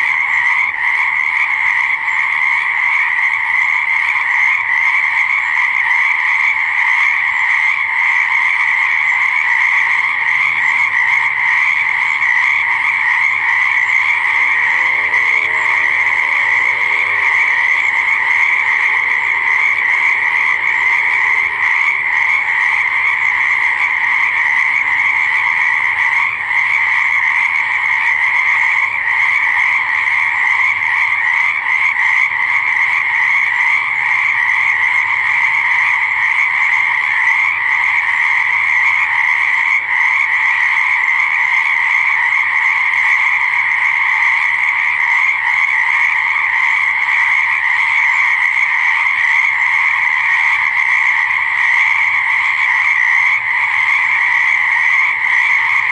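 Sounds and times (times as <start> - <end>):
chorus of frogs croaking: 0.0 - 55.9.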